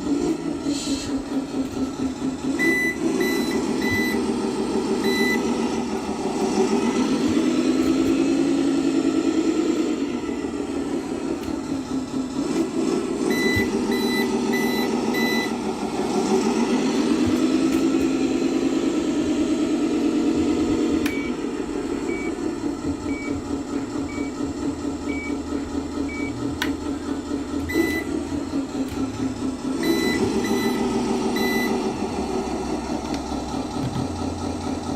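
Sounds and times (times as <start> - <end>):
truck engine running: 0.0 - 34.9
reversing beeper: 2.6 - 4.4, 5.0 - 5.9, 13.3 - 15.8, 27.7 - 28.2, 29.8 - 32.0.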